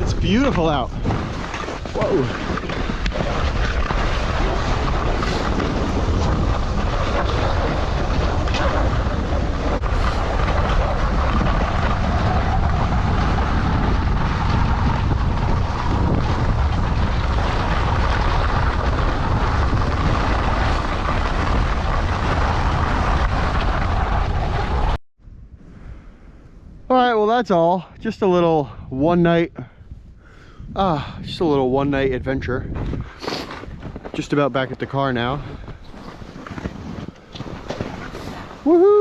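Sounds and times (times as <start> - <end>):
skis sliding on snow: 0.0 - 25.0, 33.2 - 39.0
wind buffeting microphone: 0.0 - 39.0.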